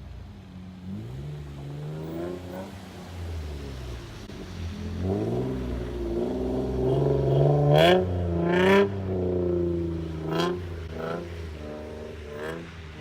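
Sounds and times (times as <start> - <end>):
car engine revving hard: 0.9 - 13.0.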